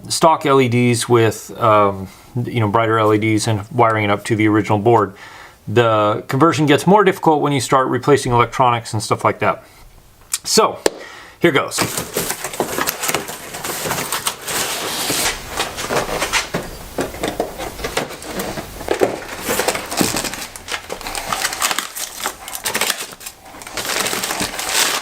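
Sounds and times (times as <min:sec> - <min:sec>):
material rustling and crinkling: 0:11.6 - 0:25.0.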